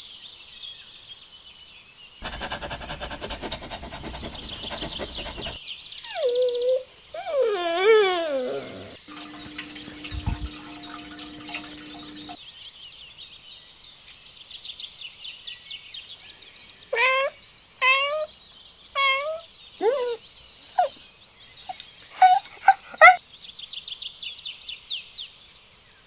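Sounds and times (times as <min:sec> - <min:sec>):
rapid high chirping: 0:02.2 - 0:06.2, 0:19.8 - 0:23.2.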